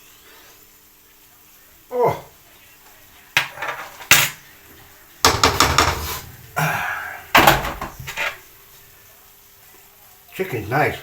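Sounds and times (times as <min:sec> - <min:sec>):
cookware and utensils clattering: 0:03.2 - 0:06.6, 0:07.3 - 0:08.6
knocking and scraping: 0:03.4 - 0:04.4, 0:05.2 - 0:06.4, 0:07.4 - 0:08.4.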